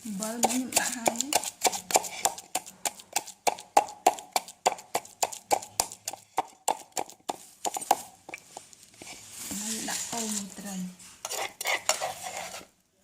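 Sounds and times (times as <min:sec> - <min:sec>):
knife chopping on wooden board: 0:00.4 - 0:08.4.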